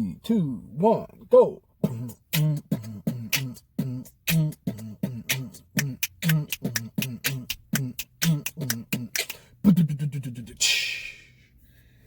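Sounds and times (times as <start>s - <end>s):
beatboxed rhythm: 1.8s - 11.3s.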